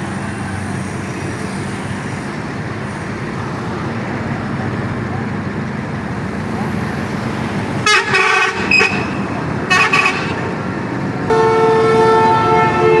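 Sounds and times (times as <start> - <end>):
road traffic noise: 0.0 - 13.0
vehicle horn honking: 7.8 - 10.5, 11.3 - 13.0.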